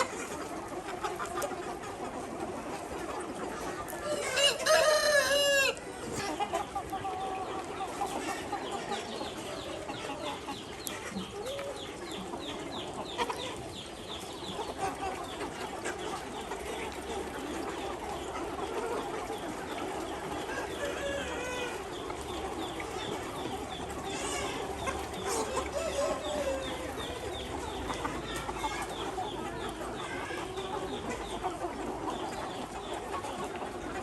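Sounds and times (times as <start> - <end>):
chickens clucking: 0.0 - 34.0
rooster crowing: 4.0 - 5.8.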